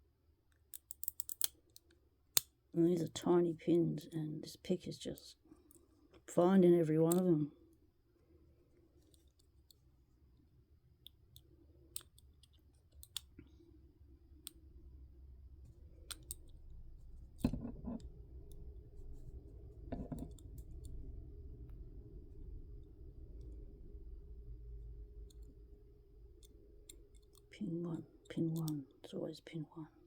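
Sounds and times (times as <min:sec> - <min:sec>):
lock pick clicking in lock: 0:00.5 - 0:02.6, 0:11.0 - 0:13.4, 0:16.0 - 0:16.6.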